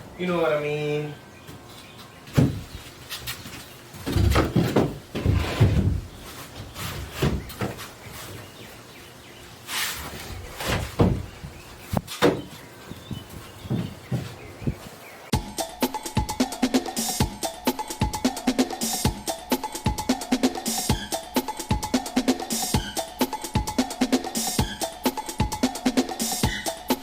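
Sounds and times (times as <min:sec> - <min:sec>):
panel knocking and thudding: 0:02.4 - 0:02.7, 0:10.7 - 0:11.6, 0:12.2 - 0:12.6
panel scraping on fiberglass: 0:04.1 - 0:07.8.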